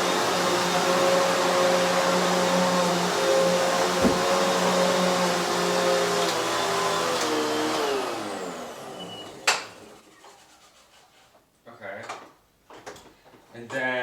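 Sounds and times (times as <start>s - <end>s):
upright vacuum running: 0.0s - 8.9s
low thump: 4.0s - 4.5s.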